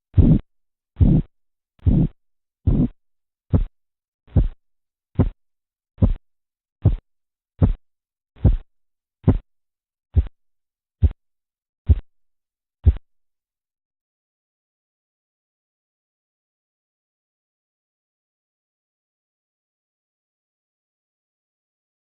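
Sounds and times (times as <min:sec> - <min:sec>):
heartbeat pulse through stethoscope: 0:00.1 - 0:04.6, 0:05.2 - 0:05.4, 0:06.0 - 0:06.2, 0:06.8 - 0:07.8, 0:08.4 - 0:09.5, 0:10.1 - 0:10.4, 0:11.0 - 0:11.2, 0:11.9 - 0:12.1, 0:12.8 - 0:13.1.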